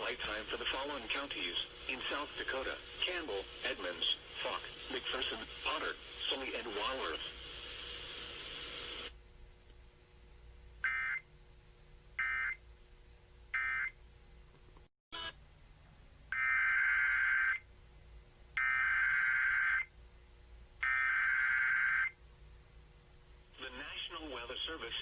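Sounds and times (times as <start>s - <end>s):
emergency alert data bursts: 10.8s - 11.2s, 12.2s - 12.6s, 18.6s - 19.9s, 20.8s - 22.1s.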